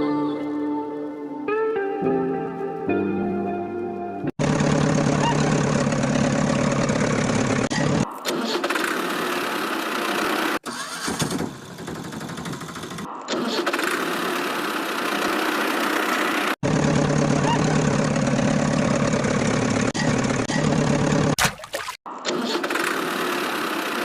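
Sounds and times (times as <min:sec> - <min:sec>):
tractor engine idling: 0:04.4 - 0:08.0, 0:14.5 - 0:21.4.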